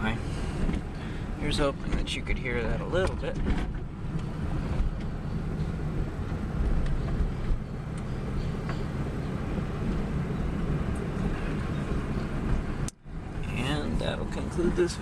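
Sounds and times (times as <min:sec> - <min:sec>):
car road rumble: 0:00.0 - 0:15.0.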